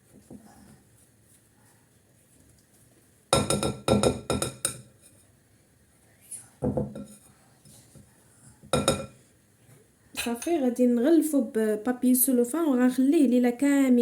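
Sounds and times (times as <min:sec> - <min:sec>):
spoon clinking against bowl: 0:08.8 - 0:09.1.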